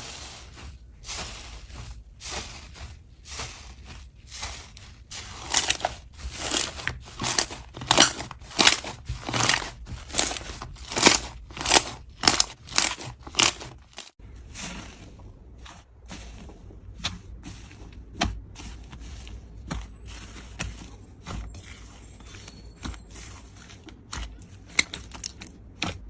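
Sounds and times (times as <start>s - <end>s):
slime squeezed crackling: 4.4s - 14.2s.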